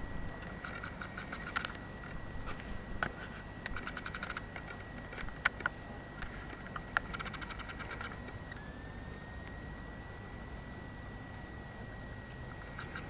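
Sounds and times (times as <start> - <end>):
high electronic whine: 0.0 - 13.0
sharp clicks: 0.4 - 2.2, 3.0 - 8.7, 12.6 - 13.0
rapid ticking: 6.8 - 8.3.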